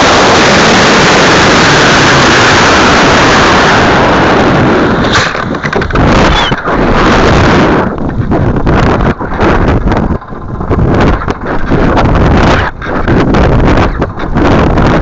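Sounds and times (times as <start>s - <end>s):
rocket motor roar: 0.0s - 9.7s
gusty wind noise: 0.0s - 15.0s.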